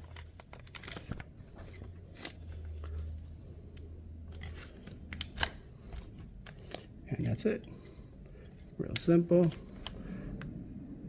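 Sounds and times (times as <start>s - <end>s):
plastic clicks and scrapes: 0.0s - 6.9s.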